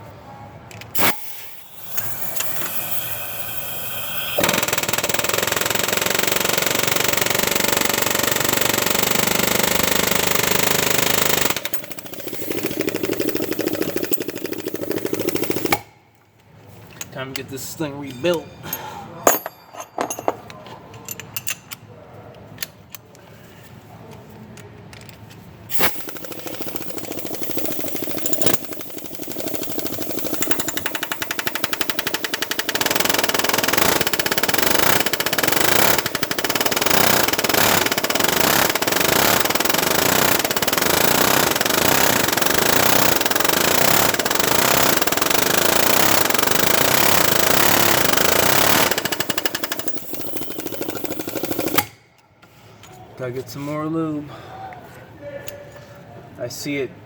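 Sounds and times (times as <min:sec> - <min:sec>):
pneumatic hammer hammering metal: 0:00.9 - 0:16.0, 0:25.7 - 0:52.1.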